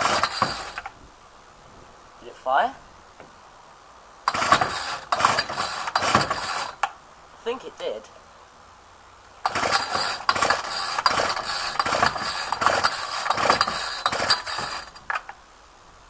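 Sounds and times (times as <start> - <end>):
string trimmer cranking and sputtering: 0.0 - 1.0, 4.2 - 6.9, 9.4 - 15.4.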